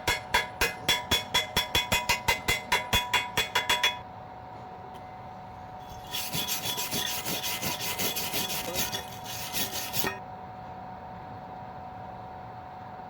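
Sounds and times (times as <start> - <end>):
rapid scraping on metal: 5.8 - 10.2.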